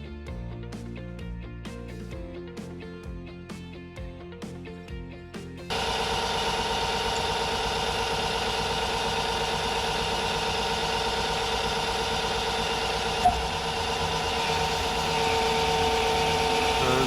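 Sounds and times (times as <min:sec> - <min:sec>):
metal lathe humming: 0:05.7 - 0:17.0.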